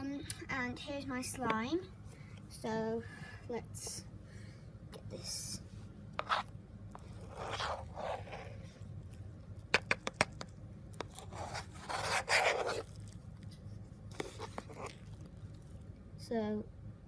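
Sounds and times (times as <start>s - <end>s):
slime scraping and rustling: 6.2s - 15.9s.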